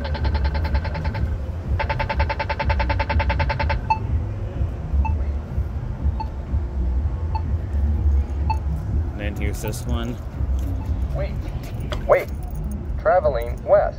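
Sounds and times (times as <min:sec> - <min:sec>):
pedestrian button rapid ticking: 0:00.0 - 0:04.0
low rumble: 0:00.0 - 0:13.2.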